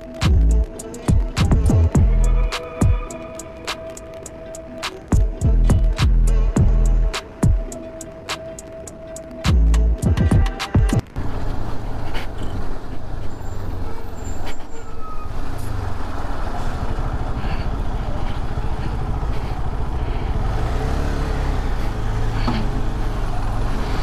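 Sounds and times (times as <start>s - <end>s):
passing traffic: 0.0s - 24.0s
motorcycle engine and wind rumble: 15.2s - 24.0s.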